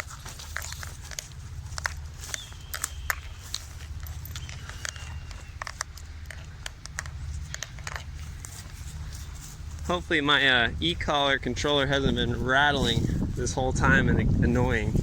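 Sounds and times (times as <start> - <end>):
low rumble of movement: 0.0 - 15.0
bird whistling call: 2.3 - 3.5, 4.4 - 5.6.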